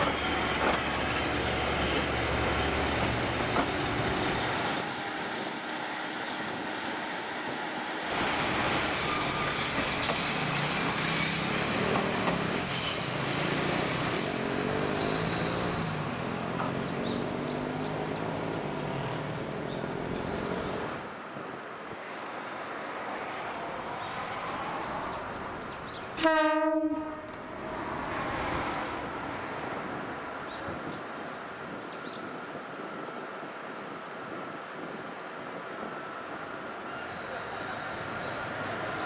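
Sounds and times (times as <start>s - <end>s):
diesel railcar engine running: 0.0s - 21.1s
train horn blast: 26.2s - 27.6s.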